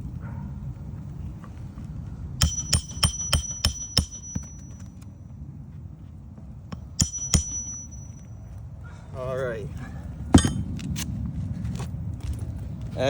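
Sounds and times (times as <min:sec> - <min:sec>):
hammer striking steel bar: 0:02.4 - 0:05.0, 0:06.7 - 0:08.4, 0:10.4 - 0:10.7.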